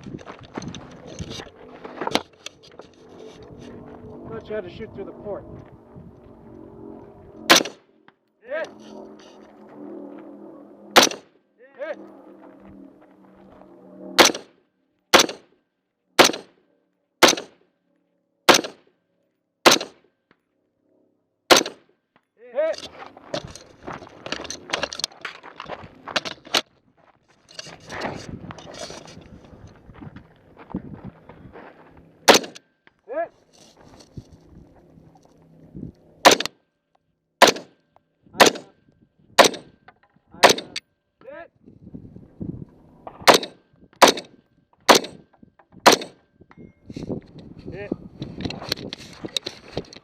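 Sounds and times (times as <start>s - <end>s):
rifle shots: 7.5s - 7.8s, 11.0s - 11.3s, 14.2s - 14.5s, 15.1s - 15.5s, 16.2s - 16.6s, 17.2s - 17.6s, 18.5s - 18.8s, 19.6s - 20.0s, 21.5s - 21.8s, 32.3s - 32.6s, 36.2s - 36.5s, 37.4s - 37.8s, 38.4s - 38.7s, 39.4s - 39.7s, 40.4s - 40.8s, 43.2s - 45.2s, 45.8s - 46.2s.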